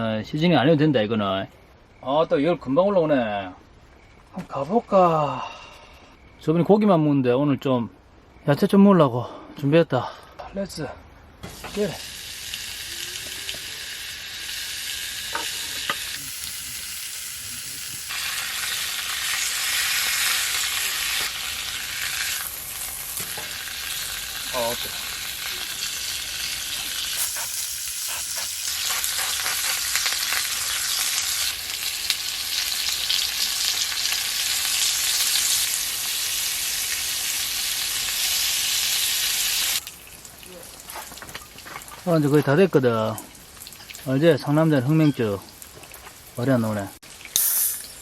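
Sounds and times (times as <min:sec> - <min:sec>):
food sizzling on a griddle: 0:11.4 - 0:41.3, 0:47.0 - 0:48.0.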